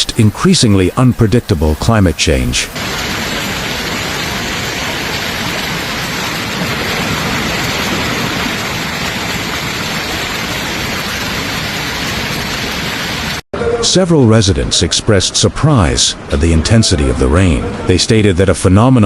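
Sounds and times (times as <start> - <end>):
heavy rain and hail: 0.4 - 13.4.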